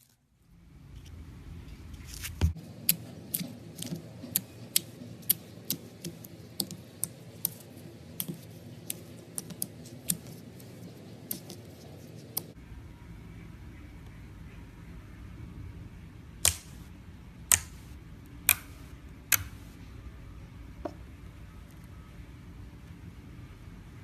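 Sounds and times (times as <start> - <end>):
slime clicking and popping: 16.4 - 16.8, 17.5 - 17.8.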